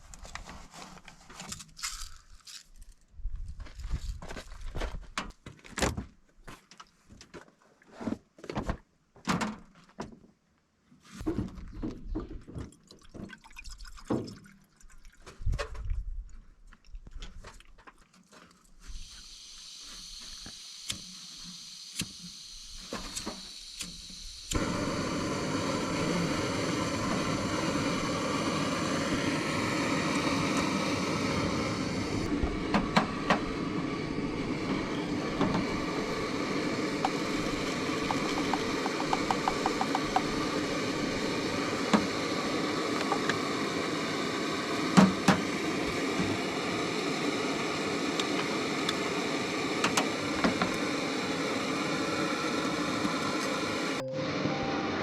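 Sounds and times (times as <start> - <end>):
knocks and rattling clicks: 38.1 - 40.3.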